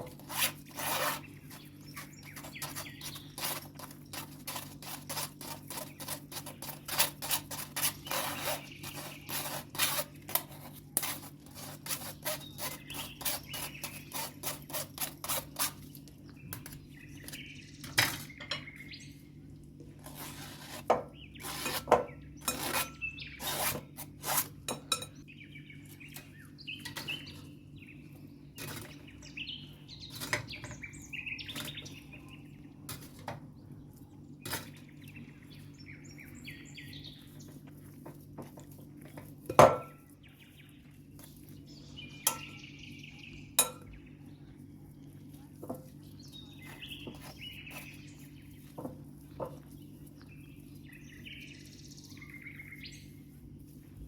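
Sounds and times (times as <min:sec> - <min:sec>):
birds chirping: 0:01.0 - 0:04.2, 0:12.0 - 0:14.6, 0:15.8 - 0:19.6, 0:25.1 - 0:32.9, 0:33.5 - 0:37.7, 0:40.0 - 0:53.4
utensils clinking against dishes: 0:24.7 - 0:25.2, 0:42.2 - 0:42.6, 0:43.6 - 0:43.9.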